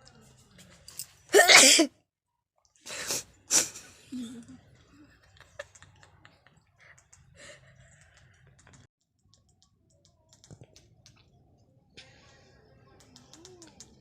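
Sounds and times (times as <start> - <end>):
faint light clicks and taps: 5.6 - 11.4.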